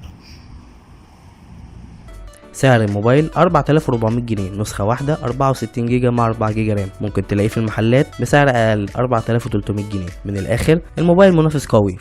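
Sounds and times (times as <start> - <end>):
faint traffic hum: 0.0 - 2.2.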